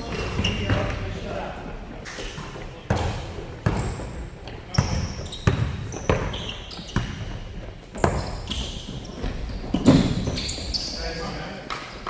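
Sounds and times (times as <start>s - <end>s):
sneakers squeaking on floor: 0.0s - 1.3s, 2.0s - 11.4s
basketball bouncing on a court: 2.9s - 10.5s.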